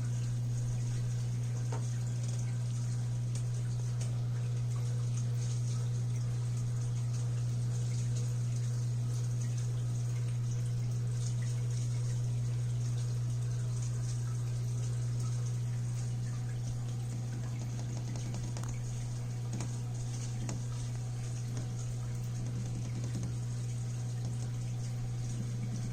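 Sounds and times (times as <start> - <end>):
aquarium pump hum: 0.0 - 25.9
aquarium water bubbling: 0.0 - 25.9.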